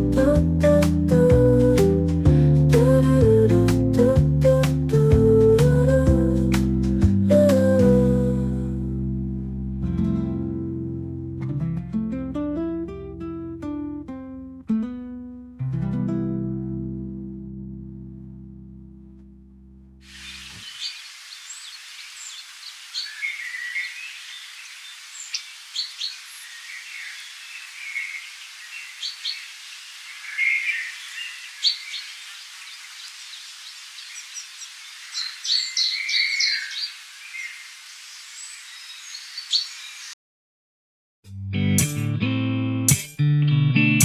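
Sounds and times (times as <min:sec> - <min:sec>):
background hiss: 0:20.0 - 0:40.1
birds chirping: 0:20.1 - 0:40.2.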